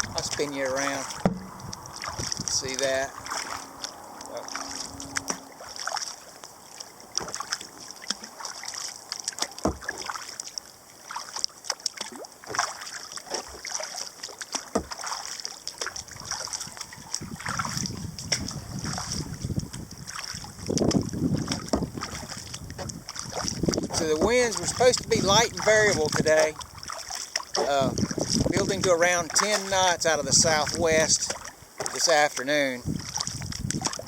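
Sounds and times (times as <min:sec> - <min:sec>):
paddle knocks: 0:00.0 - 0:03.6, 0:07.2 - 0:08.3, 0:09.3 - 0:10.2, 0:14.5 - 0:15.3, 0:20.8 - 0:26.6, 0:27.3 - 0:34.0
wind buffeting microphone: 0:00.0 - 0:04.2, 0:16.0 - 0:27.0, 0:27.6 - 0:31.3, 0:32.8 - 0:34.0
paddle splashing in water: 0:00.0 - 0:34.0.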